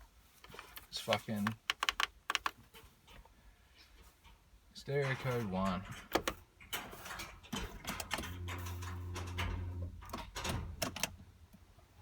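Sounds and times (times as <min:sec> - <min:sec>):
clicks and knocks of handling: 0:00.4 - 0:03.3
low steady hum: 0:07.9 - 0:12.0.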